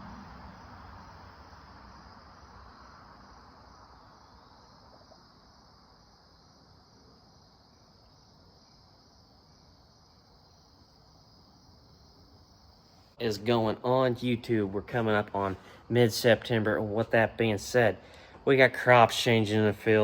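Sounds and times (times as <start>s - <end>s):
broad low noise: 0.0s - 4.3s
crickets chirring: 0.0s - 20.0s.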